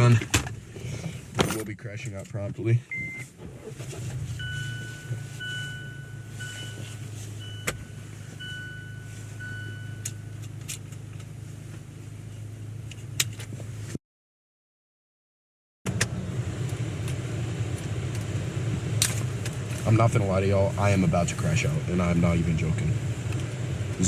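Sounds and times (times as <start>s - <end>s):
car engine idling hum: 0.0s - 14.0s, 15.9s - 24.0s
electronic warning chime beeping: 4.4s - 10.2s.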